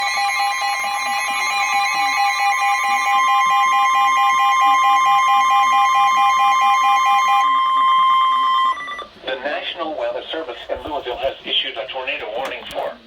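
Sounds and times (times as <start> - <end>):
loud steady electronic alert tone: 0.0 - 9.1.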